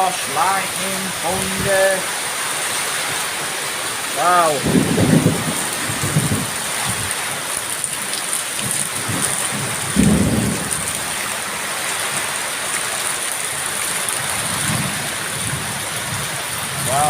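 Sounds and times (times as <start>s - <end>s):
steady rain: 0.0s - 17.0s
low rumble of thunder: 4.6s - 7.4s, 8.6s - 11.3s, 14.2s - 17.0s.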